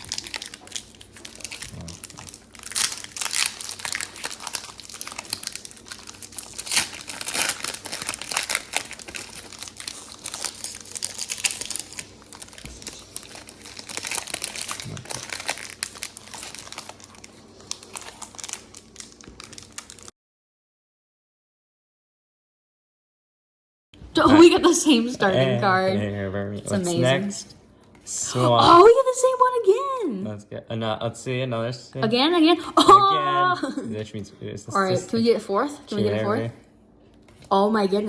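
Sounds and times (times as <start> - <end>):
foil wrappers crinkling and tearing: 0.0 - 20.1.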